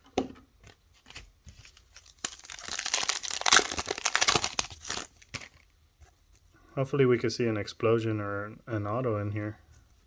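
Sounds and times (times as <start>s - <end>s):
foil wrapper crinkling and tearing: 1.6s - 5.6s.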